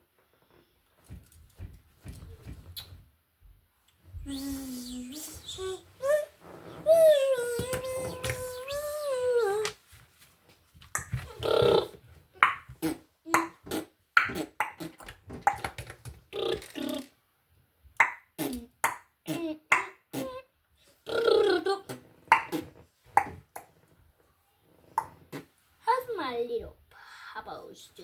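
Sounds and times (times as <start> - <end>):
child making mouth noises: 4.2 - 9.8, 11.0 - 15.7, 16.4 - 17.2, 18.0 - 23.7.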